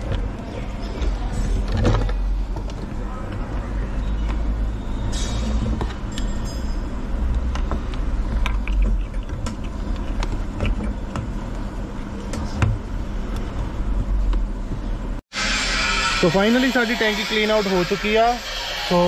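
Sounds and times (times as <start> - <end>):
steady low hum: 0.0 - 18.9.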